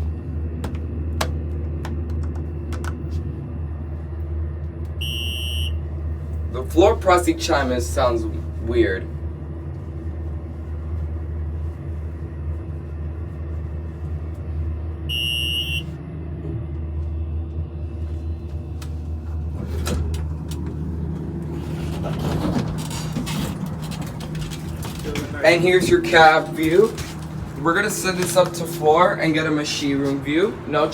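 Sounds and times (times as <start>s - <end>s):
elevator hum: 0.0s - 30.9s
short high electronic beep: 5.0s - 5.8s, 15.1s - 15.9s
rattling and clatter: 18.5s - 29.0s.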